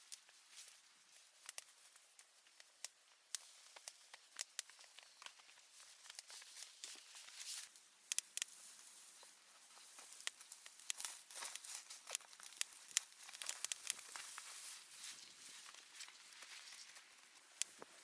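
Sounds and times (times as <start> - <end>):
dry twigs snapping: 1.4 - 8.7, 10.0 - 18.0
faint rustle: 8.4 - 18.0.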